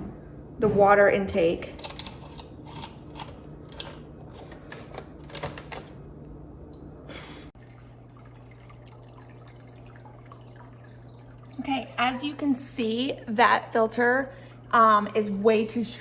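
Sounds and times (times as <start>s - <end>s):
aquarium filter humming: 0.0s - 16.0s
water pouring from filter outflow: 7.6s - 15.4s.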